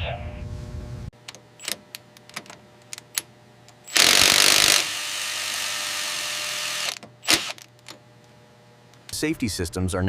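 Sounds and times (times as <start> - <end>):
sharp mechanical clicks: 1.2 - 8.0.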